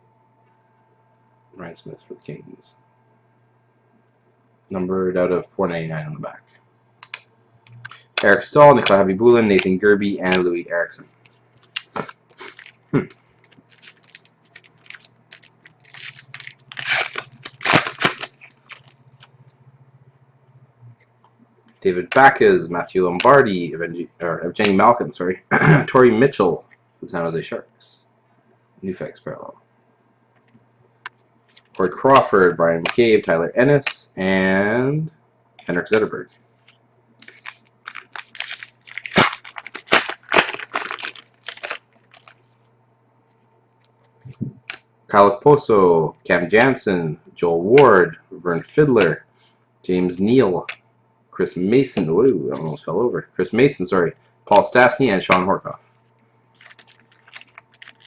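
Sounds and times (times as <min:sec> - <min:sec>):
faint low hum: 0:00.0 - 0:58.0
card pack crinkling and ripping: 0:11.6 - 0:19.3, 0:37.2 - 0:42.5, 0:56.6 - 0:58.0.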